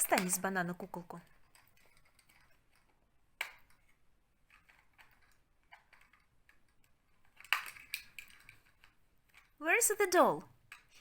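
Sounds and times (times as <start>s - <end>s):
plastic toys clicking and tapping: 0.0s - 0.5s, 1.2s - 9.6s, 10.5s - 11.0s.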